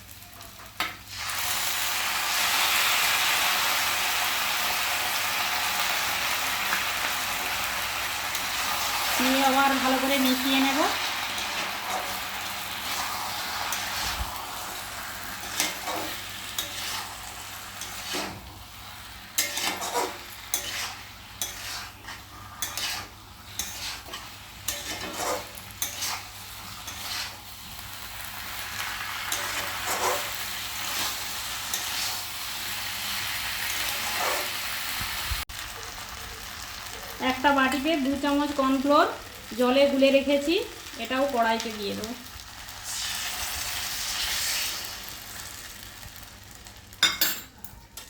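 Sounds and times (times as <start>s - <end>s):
food sizzling in a pan: 0.0s - 48.0s
utensil scraping and knocking pan: 19.4s - 26.2s.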